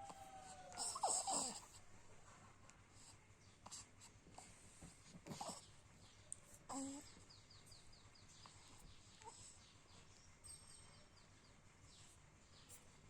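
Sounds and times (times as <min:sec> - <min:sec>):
baby cooing: 0:00.0 - 0:01.7, 0:06.7 - 0:07.1.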